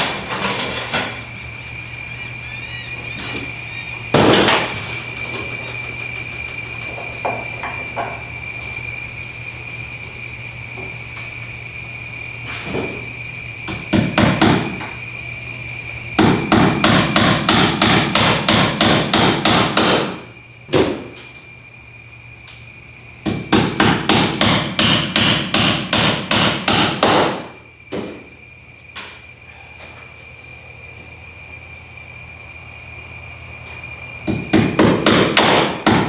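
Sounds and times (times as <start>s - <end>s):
hammer striking nails: 3.2s - 8.3s, 13.7s - 15.0s, 16.2s - 21.0s, 23.2s - 28.2s, 34.2s - 36.0s.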